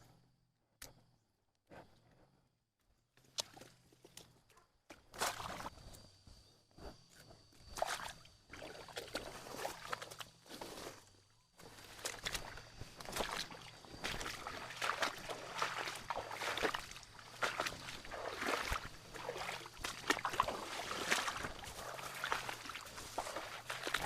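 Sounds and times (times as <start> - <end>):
footsteps in water: 3.2 - 5.8, 7.6 - 24.0
water sloshing and splashing: 5.0 - 5.8, 7.6 - 24.0.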